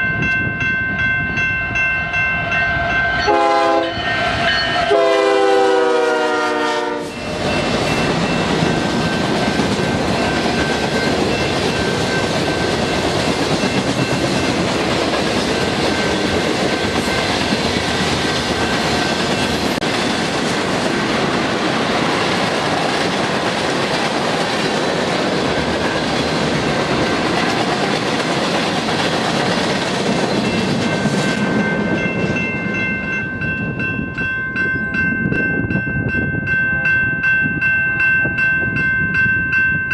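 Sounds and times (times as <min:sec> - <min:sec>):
locomotive horn chord: 0:03.2 - 0:07.2
train wheels clattering on rails: 0:07.1 - 0:33.2.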